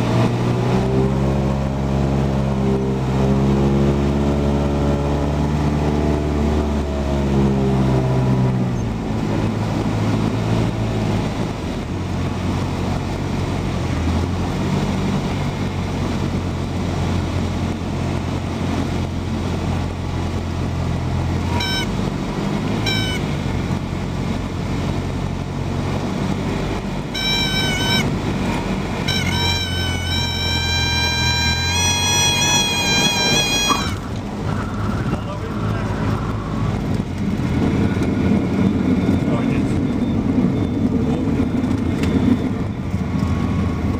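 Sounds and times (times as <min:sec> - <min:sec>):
light aircraft engine in cabin: 0:00.0 - 0:43.9
airflow noise: 0:16.0 - 0:43.9
short high chirps: 0:21.5 - 0:21.9, 0:22.8 - 0:23.4, 0:27.1 - 0:28.3, 0:29.0 - 0:34.0.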